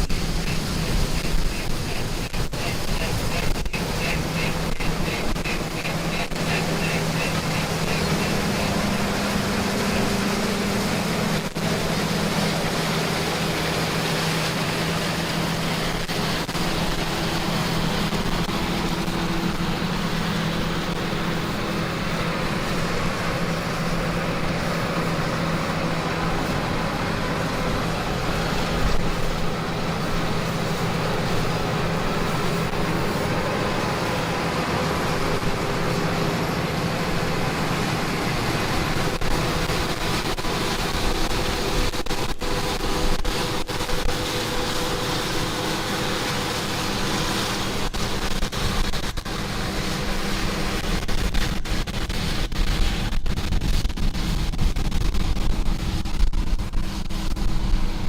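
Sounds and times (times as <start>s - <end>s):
engine and machinery running: 0.0s - 58.0s
low hum: 0.0s - 58.0s.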